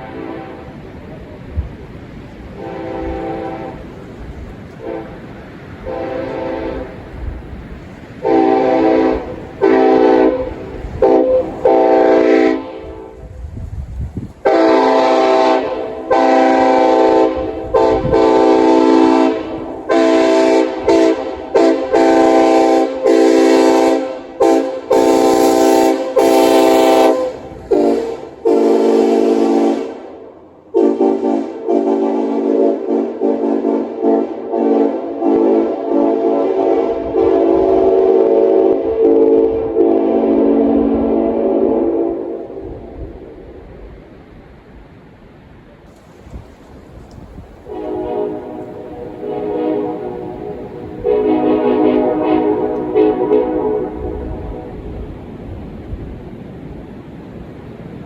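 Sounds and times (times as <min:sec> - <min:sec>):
train air horn blasts: 0:00.0 - 0:00.8, 0:02.6 - 0:03.9, 0:04.8 - 0:05.2, 0:05.8 - 0:07.0, 0:08.2 - 0:13.4, 0:14.4 - 0:42.9, 0:47.6 - 0:55.1.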